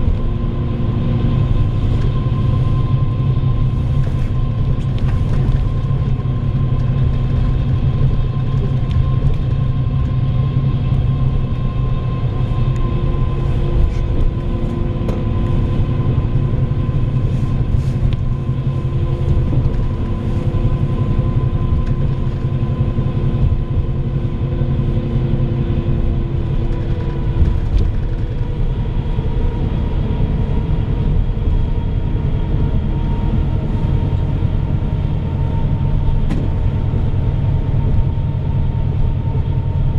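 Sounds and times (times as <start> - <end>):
bus engine and road noise: 0.0 - 39.9.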